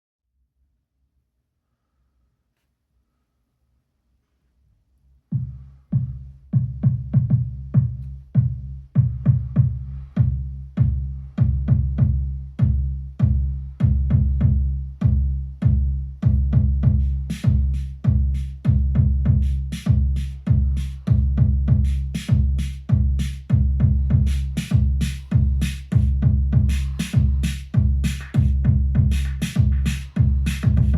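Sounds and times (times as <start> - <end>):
crisp hi-hat hits: 7.8 - 30.9.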